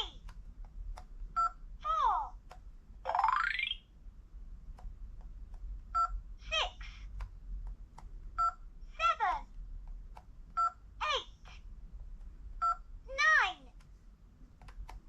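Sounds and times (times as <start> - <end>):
recorded voice clip: 0.0 - 0.2, 1.8 - 2.4, 6.4 - 7.1, 8.9 - 9.6, 11.0 - 11.6, 13.0 - 13.8
toy phone electronic beep: 6.0 - 6.2, 8.4 - 8.6, 12.6 - 12.8.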